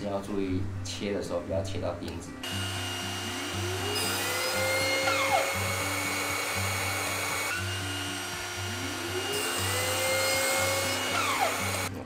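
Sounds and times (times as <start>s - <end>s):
background music: 0.0s - 12.0s
electric power saw motor: 2.4s - 11.9s.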